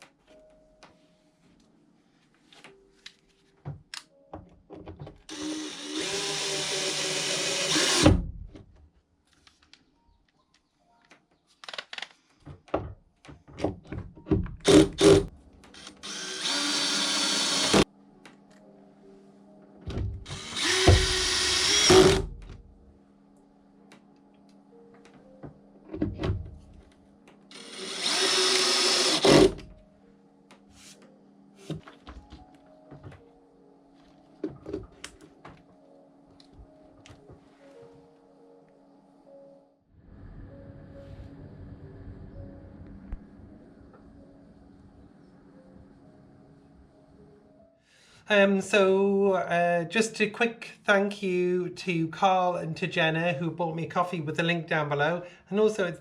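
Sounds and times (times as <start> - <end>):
hand-held power tool running: 5.3 - 8.0, 14.7 - 17.8, 20.3 - 22.3, 27.5 - 29.6.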